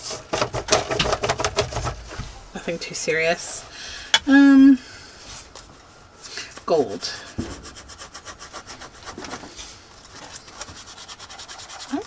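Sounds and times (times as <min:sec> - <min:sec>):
paintbrush scrubbing hard ink: 0:07.0 - 0:09.6, 0:10.6 - 0:12.0.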